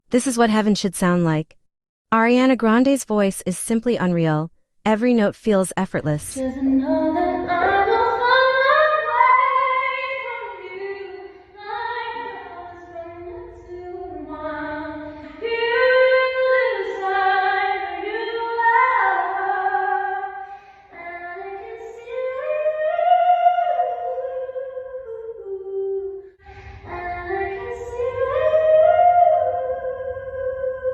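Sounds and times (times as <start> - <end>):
singer breathing: 20.4 - 21.0, 26.3 - 26.9.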